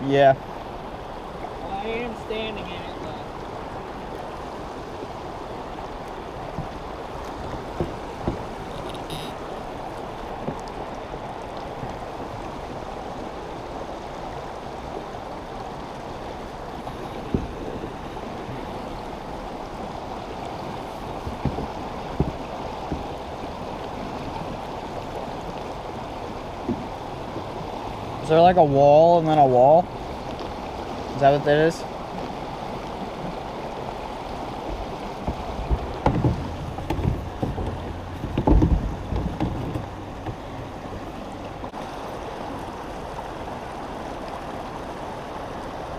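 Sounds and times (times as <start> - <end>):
creek water over small waterfall: 0.0 - 45.9
sharp knocks: 7.4 - 9.4, 17.2 - 17.6, 21.1 - 23.2, 35.2 - 40.6.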